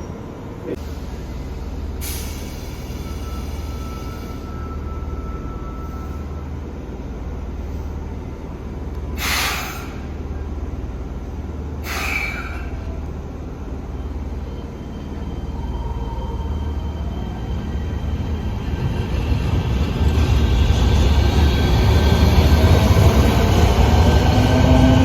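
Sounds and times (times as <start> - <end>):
train low rumble: 0.0 - 25.0
short hisses: 9.2 - 10.0, 11.8 - 12.6.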